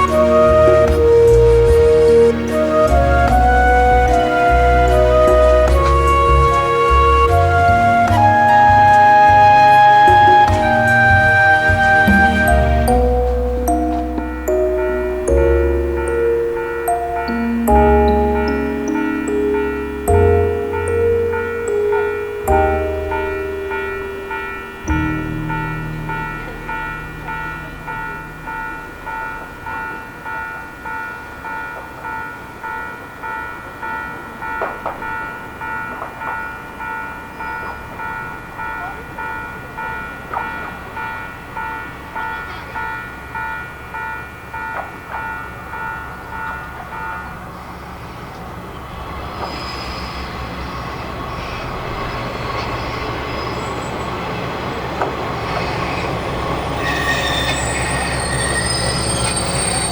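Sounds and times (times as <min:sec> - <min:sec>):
high wheel squeals: 0:00.0 - 0:18.1, 0:46.4 - 0:59.9
diesel railcar rumble: 0:00.0 - 0:59.9
electronic warning bell chiming: 0:12.9 - 0:47.4, 0:56.3 - 0:59.9.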